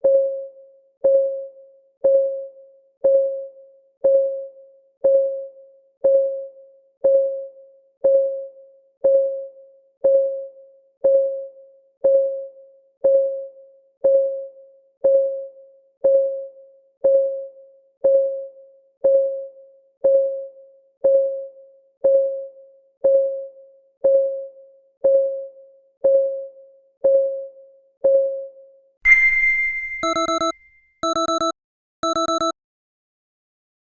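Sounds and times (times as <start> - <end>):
clock ticking: 30.0 - 32.5.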